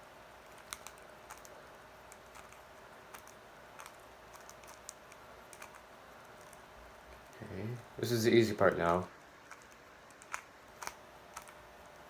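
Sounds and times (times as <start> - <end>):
puzzle cube clicking: 0.4 - 7.4, 9.4 - 12.0.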